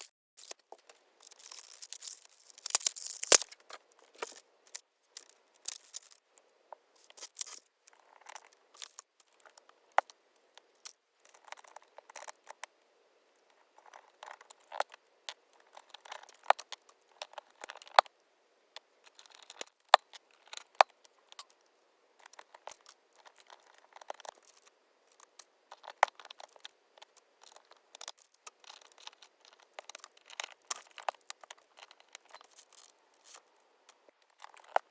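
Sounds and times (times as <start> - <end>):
packaging crinkling: 0.0 - 4.8.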